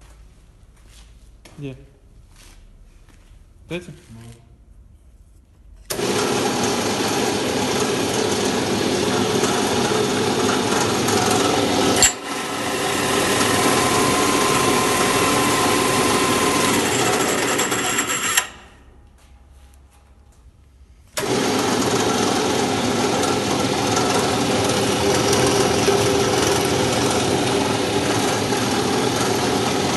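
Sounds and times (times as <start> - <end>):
milling machine running: 5.9 - 18.7, 21.2 - 29.9.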